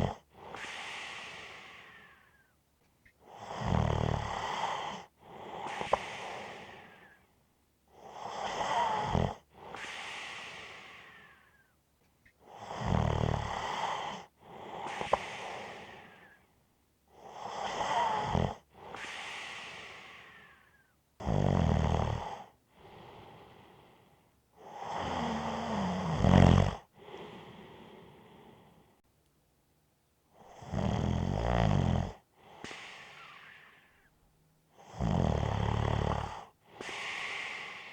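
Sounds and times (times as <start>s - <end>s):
person snoring: 3.4s - 5.0s, 8.3s - 11.4s, 12.6s - 14.2s, 17.5s - 20.6s, 21.2s - 23.2s, 24.7s - 28.8s, 30.4s - 34.1s, 34.8s - 37.9s.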